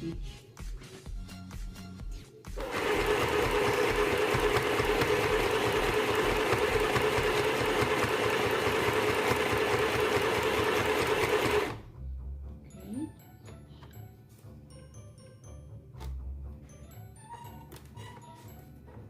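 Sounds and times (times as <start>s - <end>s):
sewing machine stitching: 2.6s - 11.8s.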